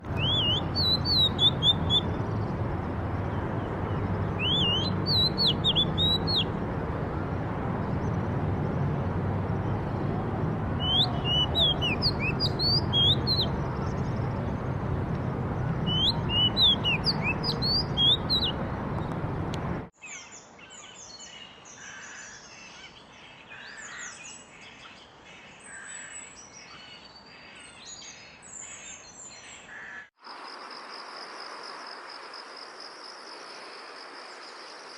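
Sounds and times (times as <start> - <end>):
songbirds whistling: 0.0 - 2.6, 3.3 - 6.6, 10.7 - 14.3, 15.7 - 19.2
chorus of birds chirping: 0.0 - 30.1.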